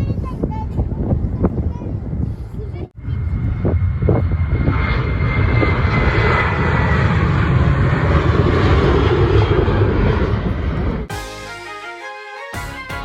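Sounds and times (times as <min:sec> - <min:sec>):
airliner engines rumbling: 0:00.0 - 0:11.2.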